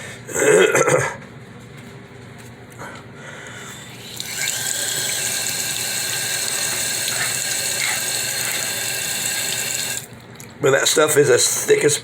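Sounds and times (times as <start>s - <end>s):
tap water running into sink: 3.9s - 10.2s.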